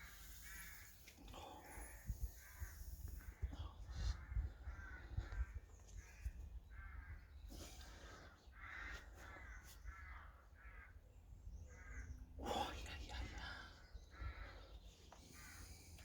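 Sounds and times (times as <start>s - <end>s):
crows cawing: 0.0s - 3.5s, 4.1s - 7.4s, 8.4s - 11.0s, 11.7s - 12.2s, 14.1s - 16.0s.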